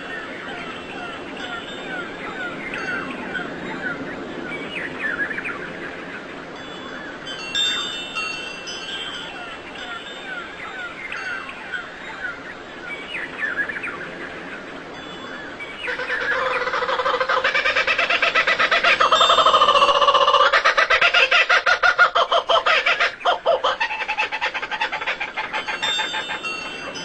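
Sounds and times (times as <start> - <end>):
birds chirping: 0.0 - 27.0
fast pulsing bird call: 15.7 - 27.0.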